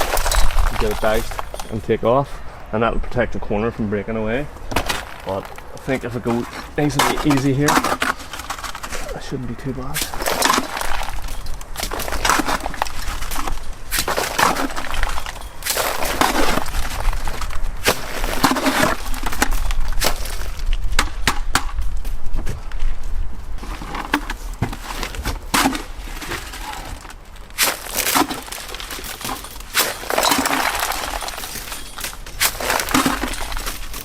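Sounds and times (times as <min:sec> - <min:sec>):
gritty clicks of stone chips: 0:00.0 - 0:01.8, 0:04.7 - 0:09.2, 0:10.0 - 0:20.8, 0:25.5 - 0:34.0.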